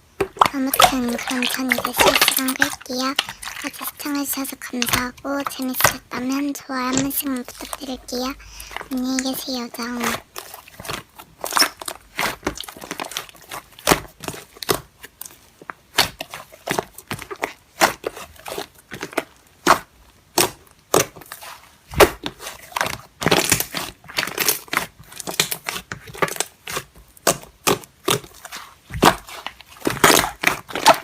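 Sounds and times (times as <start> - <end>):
slime squished by hand: 6.8 - 31.0.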